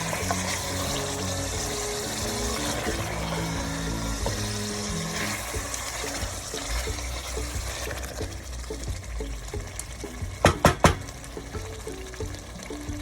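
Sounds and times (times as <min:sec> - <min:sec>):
curry sizzling in a pot: 0:00.0 - 0:13.0
sharp knocks: 0:10.4 - 0:11.1.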